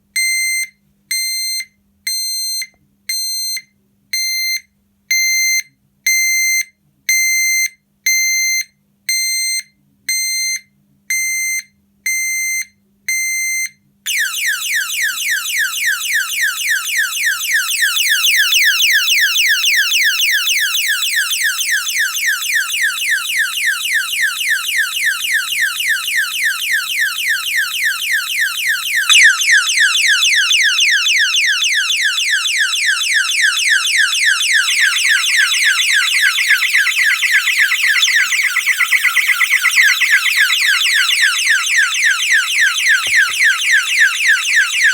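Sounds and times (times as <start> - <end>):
electronic alarm siren sweeping: 14.1 - 44.9
high warning beep: 29.1 - 31.6, 34.3 - 44.9.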